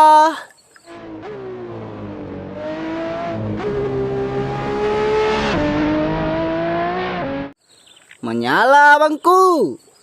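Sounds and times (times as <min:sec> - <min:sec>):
race car engine revving: 0:00.9 - 0:07.6.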